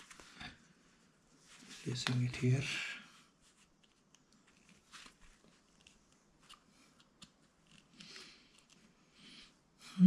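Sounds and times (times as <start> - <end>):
hands rustling a sandal lace: 3.3 - 9.0.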